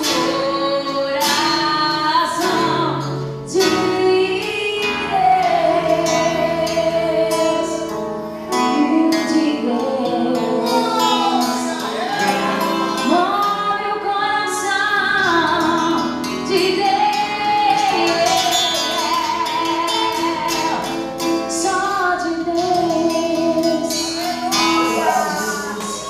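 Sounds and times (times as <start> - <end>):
church band playing: 10.5 - 13.6, 23.5 - 26.0.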